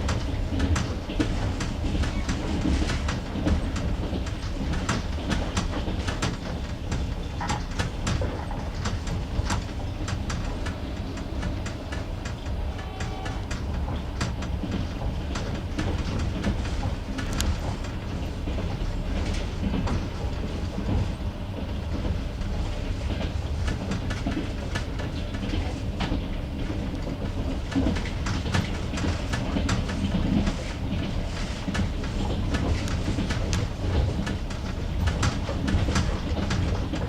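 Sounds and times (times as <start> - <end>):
low rumble of moving carriage: 0.0 - 37.0
train wheels clattering over joints: 0.0 - 37.0.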